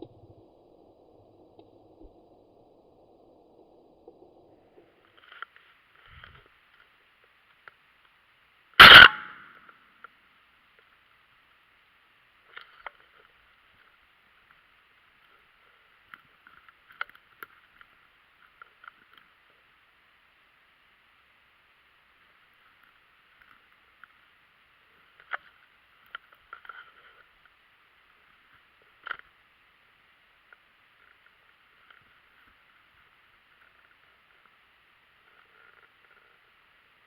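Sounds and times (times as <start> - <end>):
shotgun shot: 8.8 - 9.5
small clicks: 12.4 - 14.6, 16.0 - 19.6.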